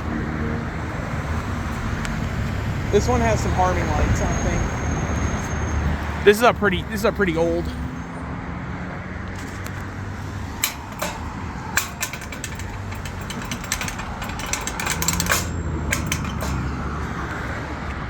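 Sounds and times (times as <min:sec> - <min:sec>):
vehicle engines idling: 0:00.0 - 0:18.0
sharp clicks: 0:10.6 - 0:16.8.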